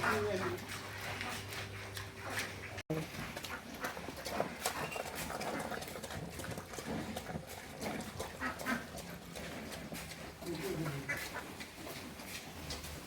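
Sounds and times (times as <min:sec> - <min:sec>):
pigs grunting: 0:00.0 - 0:13.0.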